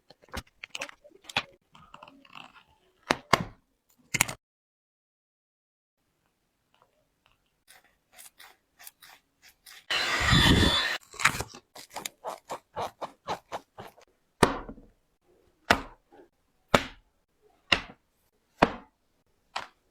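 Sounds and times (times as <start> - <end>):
rasping cut: 7.7 - 14.1.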